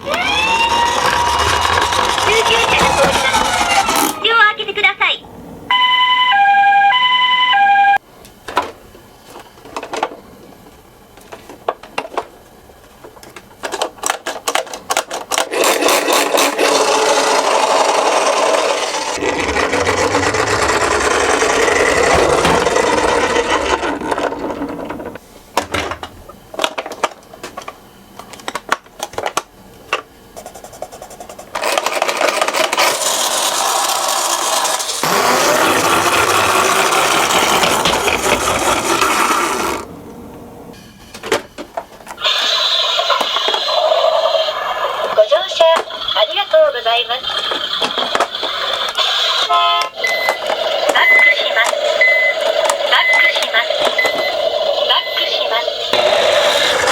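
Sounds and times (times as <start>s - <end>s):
toy cars rolling on plastic track: 0.0s - 4.4s, 13.6s - 25.2s, 31.5s - 39.9s, 42.2s - 56.9s
toy cars clicking and rattling: 0.2s - 4.2s, 13.6s - 24.7s, 31.5s - 39.8s, 47.2s - 49.6s.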